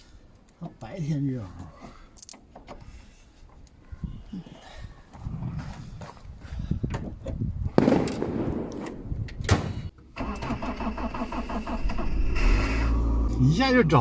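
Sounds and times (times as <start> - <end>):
engine cranking and starting: 10.2 - 13.5.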